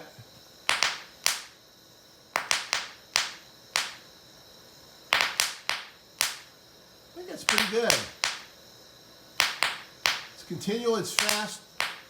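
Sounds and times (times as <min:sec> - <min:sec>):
torch flame: 0:00.3 - 0:04.2, 0:05.1 - 0:06.6
soap bubbles popping with sharp bangs: 0:00.7 - 0:01.5, 0:02.4 - 0:04.0, 0:05.1 - 0:06.4, 0:07.5 - 0:08.5, 0:09.4 - 0:10.4, 0:11.2 - 0:12.0.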